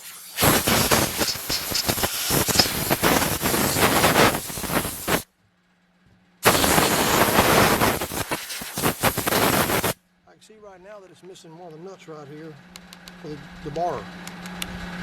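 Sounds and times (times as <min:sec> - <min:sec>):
compressed air hissing: 0:00.0 - 0:05.3, 0:06.4 - 0:10.0.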